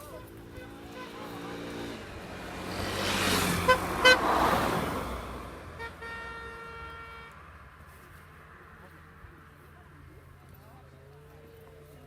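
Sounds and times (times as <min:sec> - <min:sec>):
car horn toots: 0:00.5 - 0:01.8, 0:03.6 - 0:04.4, 0:05.8 - 0:07.4
car passing by: 0:00.6 - 0:06.6.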